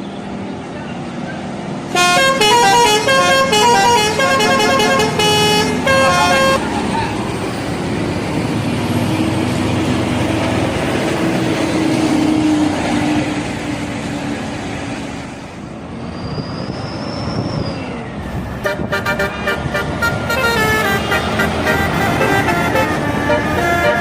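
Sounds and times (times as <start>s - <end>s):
road traffic noise: 0.0s - 24.0s
multi-tone musical air horn: 1.9s - 6.6s, 18.6s - 24.0s.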